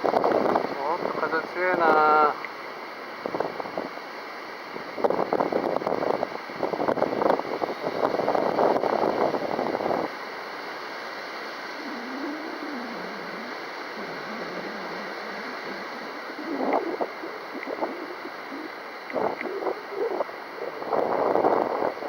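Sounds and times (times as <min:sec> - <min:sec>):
wind buffeting microphone: 0:00.0 - 0:02.0, 0:04.7 - 0:10.1, 0:11.8 - 0:22.0
wavering faint hum: 0:11.3 - 0:22.0.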